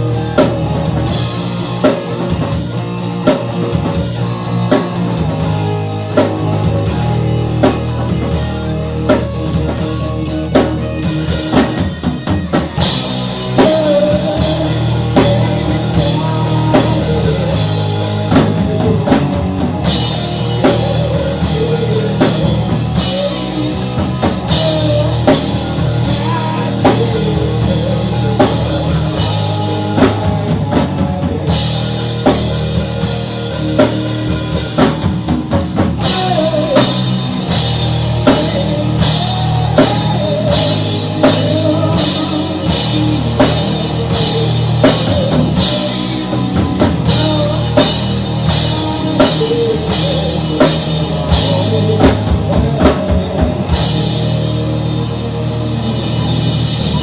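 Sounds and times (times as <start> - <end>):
drums keeping steady beat: 0.0 - 57.0
rock music: 0.0 - 57.0.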